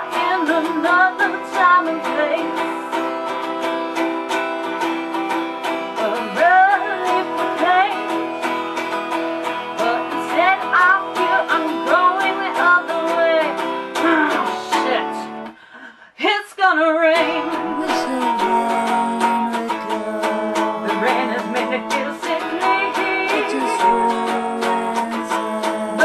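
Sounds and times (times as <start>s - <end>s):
acoustic guitar strumming: 0.0s - 15.6s, 17.0s - 26.0s
person singing wordless melody: 5.8s - 8.5s, 16.2s - 26.0s.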